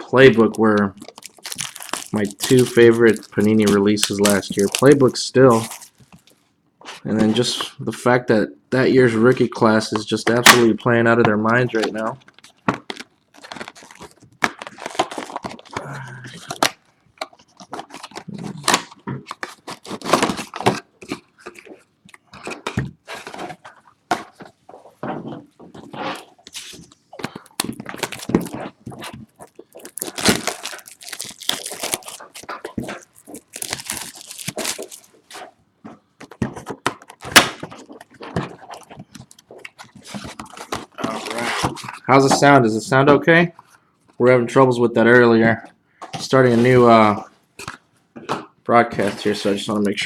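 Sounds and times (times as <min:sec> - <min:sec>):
plastic wrapping tearing and crinkling: 0:00.3 - 0:06.4, 0:12.0 - 0:23.8, 0:25.7 - 0:35.4.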